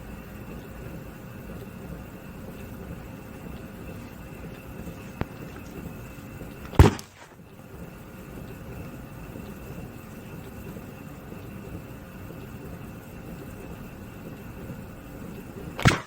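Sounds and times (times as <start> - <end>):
punches hitting heavy bag: 15.8 - 16.0.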